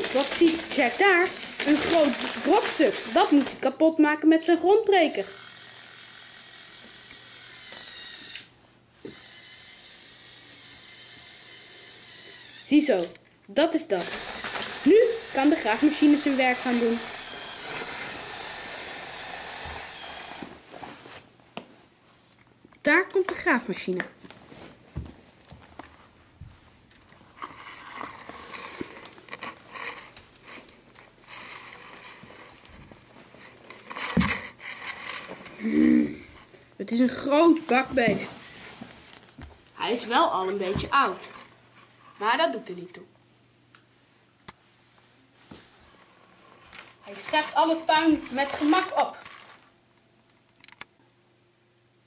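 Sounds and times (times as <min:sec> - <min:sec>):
toy motor and gears whirring: 0:00.0 - 0:03.6, 0:04.8 - 0:13.2, 0:13.8 - 0:20.5, 0:27.4 - 0:32.8, 0:33.4 - 0:35.8, 0:39.8 - 0:41.5, 0:46.4 - 0:49.6
small click: 0:50.5 - 0:50.9.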